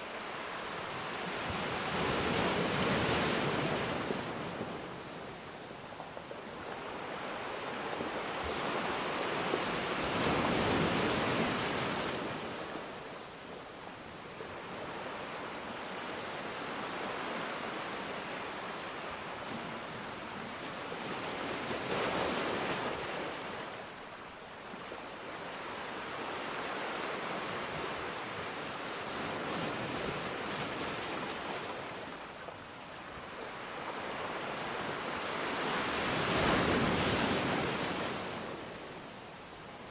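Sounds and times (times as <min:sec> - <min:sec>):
sea waves breaking on beach: 0:25.2 - 0:39.0.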